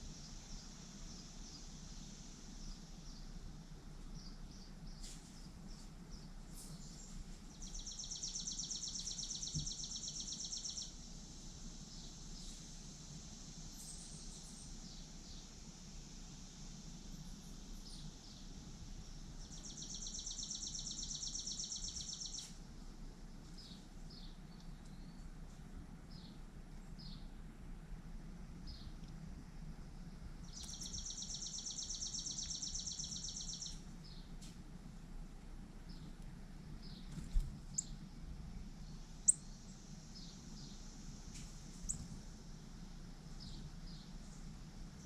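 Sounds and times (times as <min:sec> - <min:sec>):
low outdoor rumble: 0:00.0 - 0:45.0
birds chirping: 0:30.4 - 0:34.4, 0:36.8 - 0:40.9.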